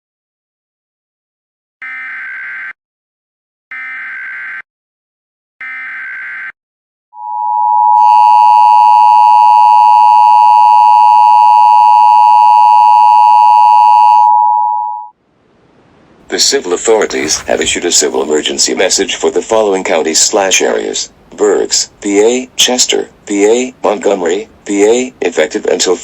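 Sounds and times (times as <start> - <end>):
many-pitched tone: 7.2 - 15.1.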